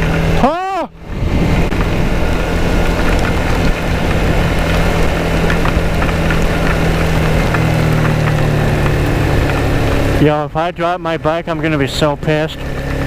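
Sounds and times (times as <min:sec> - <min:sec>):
wind noise: 0:00.0 - 0:10.2
motorcycle engine cruising: 0:00.0 - 0:13.0
raindrops ticking on helmet: 0:01.7 - 0:09.8.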